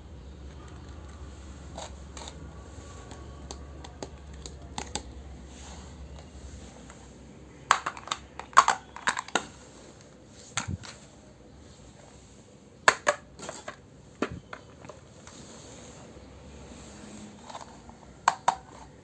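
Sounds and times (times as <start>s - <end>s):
toy kitchen pieces clattering: 0.5s - 5.1s, 7.6s - 9.6s, 12.9s - 15.3s, 17.3s - 19.0s.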